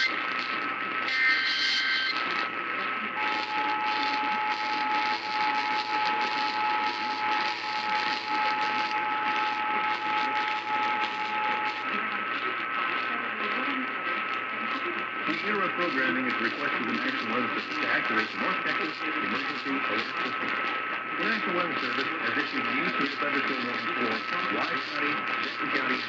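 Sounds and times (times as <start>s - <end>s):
data header burst: 0.0s - 2.6s, 3.2s - 13.1s
crackling radio static: 0.0s - 26.0s
steady attention tone: 1.0s - 2.5s, 3.2s - 12.6s.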